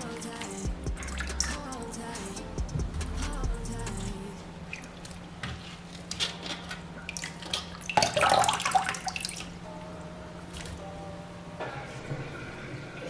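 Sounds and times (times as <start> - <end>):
steady low hum: 0.0 - 5.4.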